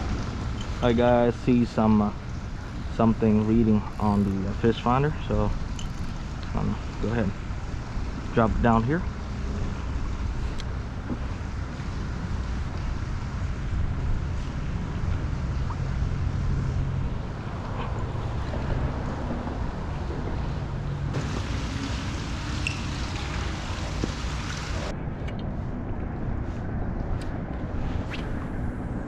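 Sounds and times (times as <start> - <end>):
wind rumble on microphone: 0.0 - 29.0
water lapping: 14.4 - 24.9.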